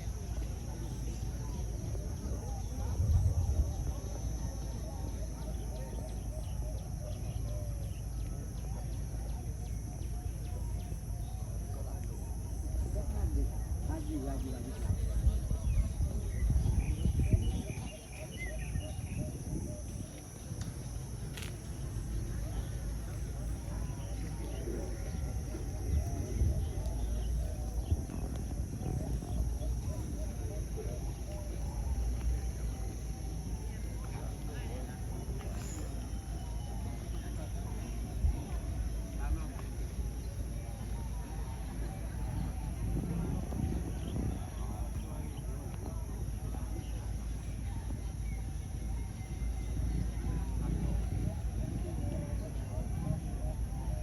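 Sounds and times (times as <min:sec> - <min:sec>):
steady low rumble: 0:00.0 - 0:54.0
doves cooing: 0:15.6 - 0:39.2.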